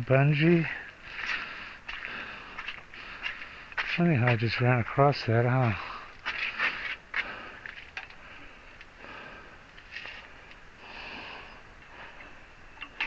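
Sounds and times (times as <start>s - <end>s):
man breathing and sniffing: 0.9s - 3.8s, 5.7s - 12.6s.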